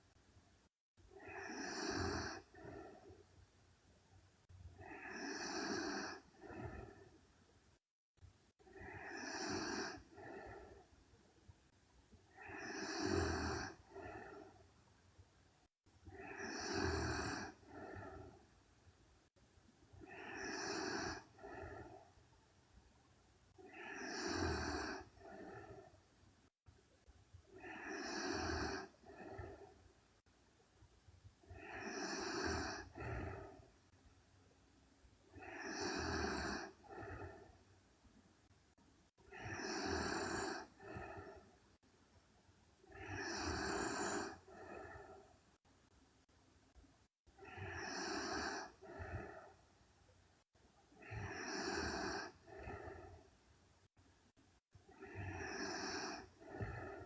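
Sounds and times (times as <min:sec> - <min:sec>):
woman snoring: 0:01.1 - 0:03.2, 0:04.8 - 0:07.2, 0:08.6 - 0:10.9, 0:12.3 - 0:14.6, 0:16.1 - 0:18.4, 0:20.0 - 0:22.1, 0:23.6 - 0:26.0, 0:27.5 - 0:29.8, 0:31.4 - 0:33.7, 0:35.3 - 0:37.6, 0:39.2 - 0:41.6, 0:42.8 - 0:45.4, 0:47.4 - 0:49.6, 0:51.0 - 0:53.3, 0:54.9 - 0:57.0.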